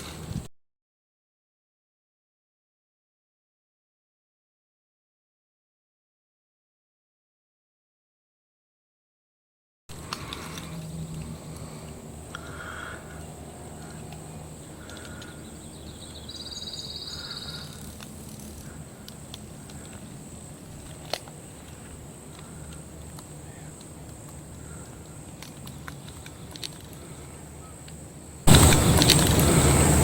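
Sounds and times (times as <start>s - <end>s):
steady low hum: 9.9s - 30.0s
birds cawing: 10.2s - 18.0s, 22.4s - 23.9s
rapid high bird trill: 10.8s - 18.9s.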